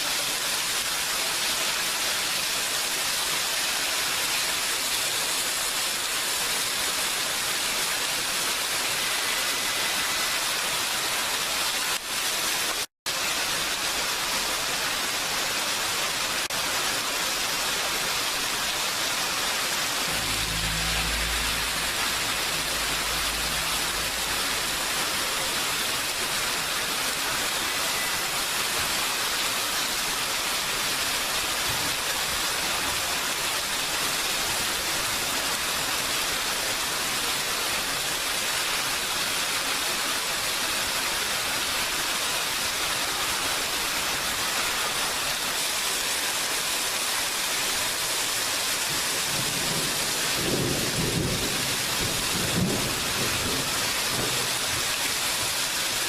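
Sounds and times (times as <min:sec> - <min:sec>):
heavy rain falling: 0:00.0 - 0:56.0
thunder rumble: 0:20.0 - 0:26.6.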